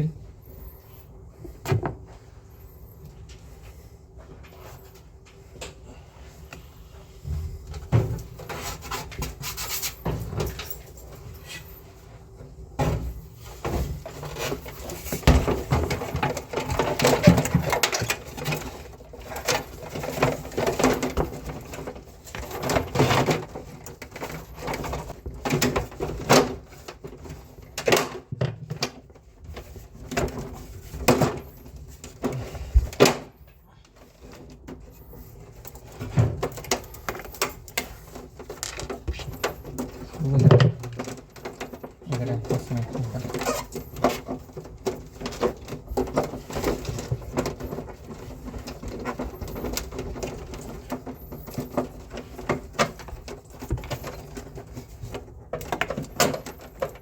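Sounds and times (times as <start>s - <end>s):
tools and parts knocking and rattling: 7.2s - 57.0s.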